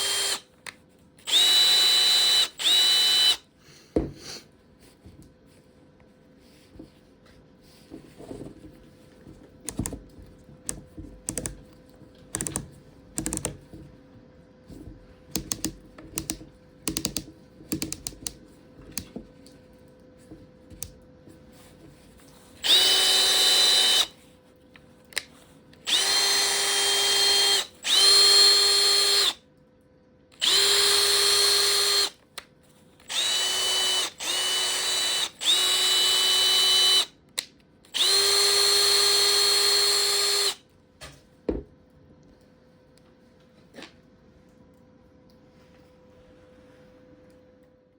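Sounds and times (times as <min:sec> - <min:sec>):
drill motor whining: 0:00.0 - 0:00.4, 0:01.2 - 0:03.4, 0:22.6 - 0:24.1, 0:25.8 - 0:29.4, 0:30.4 - 0:32.2, 0:33.0 - 0:37.1, 0:37.9 - 0:40.6.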